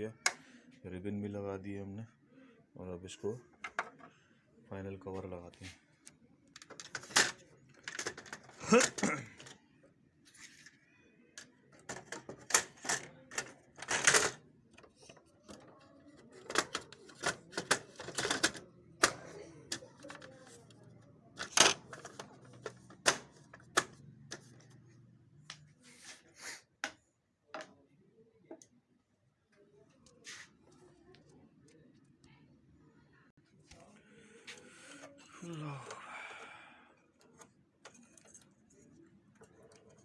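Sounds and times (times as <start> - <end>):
plastic parts clicking and snapping: 3.6 - 4.1, 6.5 - 9.6, 11.4 - 20.8, 21.4 - 24.7.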